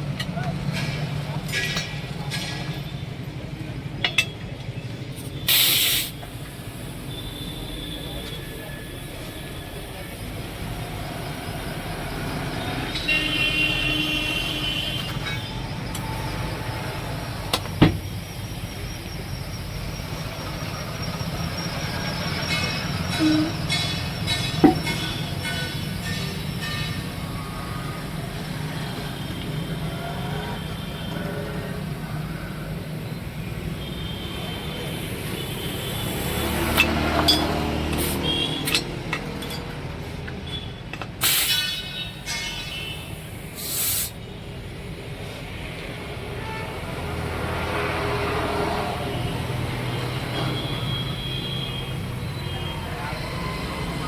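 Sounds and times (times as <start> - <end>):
vehicles passing by: 0.0 - 54.0
sharp knocks: 24.4 - 25.2.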